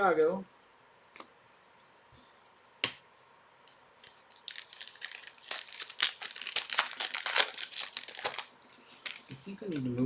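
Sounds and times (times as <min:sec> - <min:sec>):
plastic wrapper crinkling and tearing: 0:04.0 - 0:10.0.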